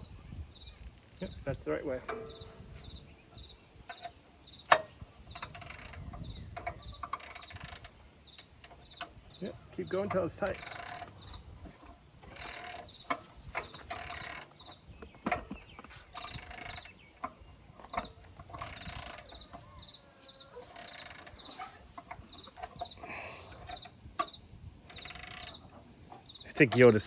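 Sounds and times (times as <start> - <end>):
wrench clicking and scraping on bolt: 0.6 - 27.0.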